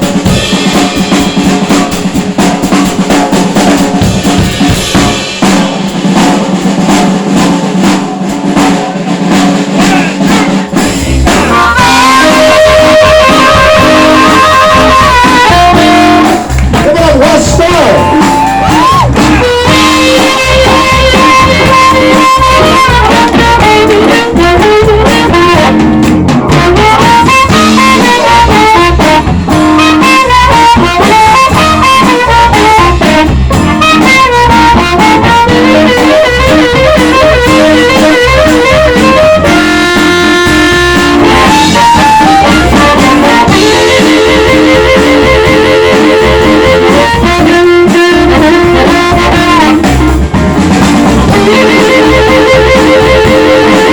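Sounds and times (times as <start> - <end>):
bass: 0.0 - 53.9
drums: 0.0 - 53.9
electric guitar: 0.0 - 53.9
harmonica bending notes: 10.2 - 50.2, 51.0 - 53.9.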